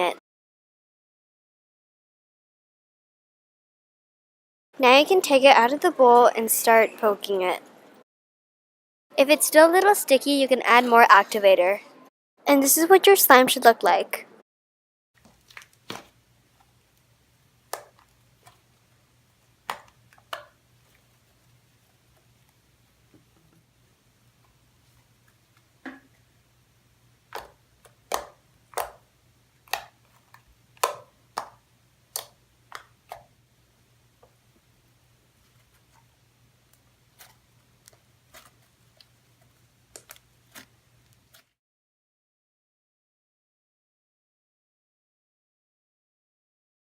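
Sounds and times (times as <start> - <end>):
low electrical hum: 15.2 - 41.4
slime clicking and popping: 29.6 - 30.0.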